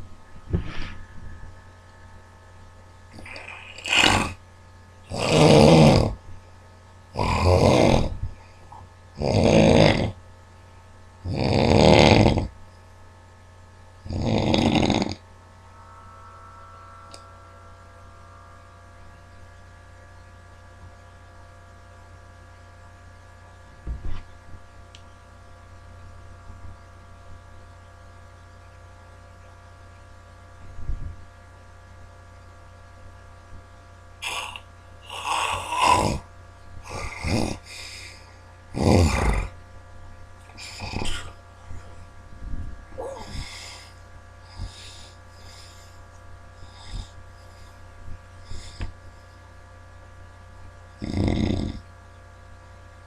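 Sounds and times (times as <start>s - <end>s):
faint steady tones: 0.0s - 3.8s, 15.2s - 35.7s
electrical hum: 0.0s - 53.0s
loud deep snore: 3.1s - 4.4s, 5.1s - 6.2s, 7.1s - 8.2s, 9.2s - 10.2s, 11.2s - 12.6s, 14.0s - 15.3s, 34.2s - 39.6s, 40.6s - 41.4s, 43.0s - 45.9s, 51.0s - 51.8s
noisy snoring breaths: 3.1s - 4.4s, 5.1s - 6.2s, 7.1s - 10.2s, 11.2s - 12.6s, 14.0s - 15.3s, 34.2s - 39.6s, 40.4s - 41.9s, 43.0s - 49.4s, 51.0s - 51.9s.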